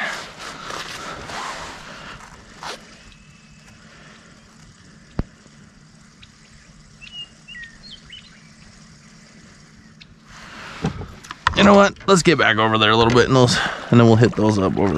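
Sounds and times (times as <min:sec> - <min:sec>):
short bird chirps: 0:06.2 - 0:10.2.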